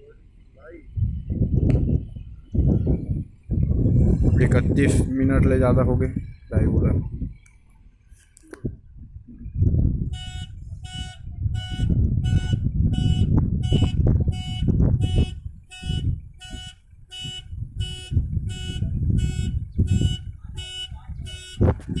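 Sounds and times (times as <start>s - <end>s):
diesel engine rumble: 0.0s - 22.0s
reversing alarm beeps: 10.2s - 22.0s.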